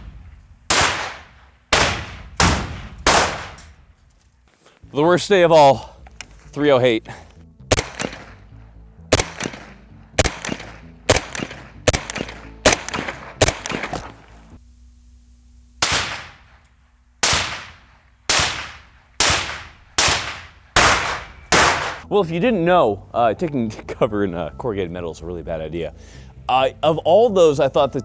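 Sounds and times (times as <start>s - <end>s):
bullets striking metal wall: 0.0s - 3.9s, 9.1s - 14.2s, 15.8s - 16.6s, 17.2s - 22.0s.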